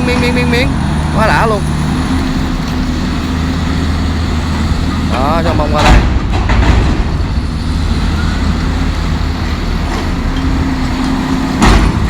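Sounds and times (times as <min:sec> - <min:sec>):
excavator diesel engine running: 0:00.0 - 0:12.0
shear working scrap metal: 0:00.0 - 0:12.0
loud metallic bang: 0:05.5 - 0:07.5, 0:11.6 - 0:12.0.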